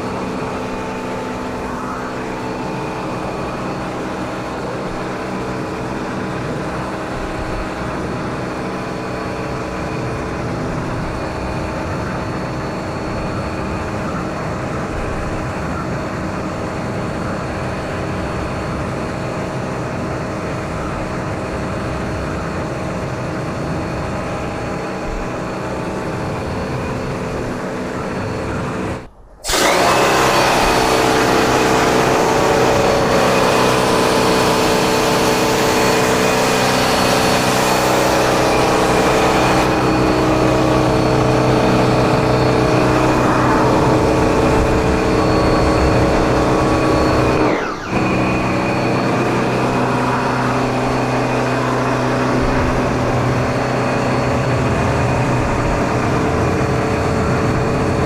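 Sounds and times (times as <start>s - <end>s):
pressure washer motor humming: 0.0s - 13.8s, 20.8s - 58.0s
water jet hissing: 29.4s - 40.3s.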